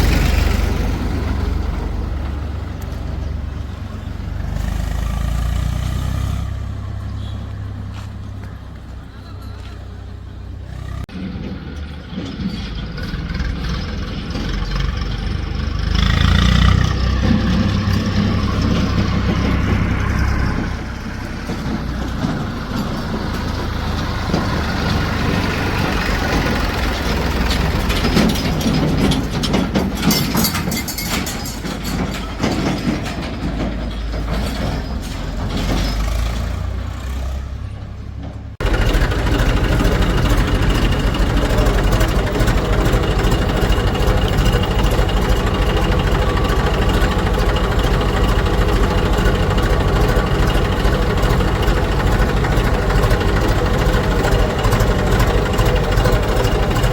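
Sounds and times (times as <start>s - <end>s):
steady engine running: 0.0s - 5.8s, 13.0s - 30.1s, 38.6s - 56.9s
diesel engine working under load: 0.0s - 56.9s.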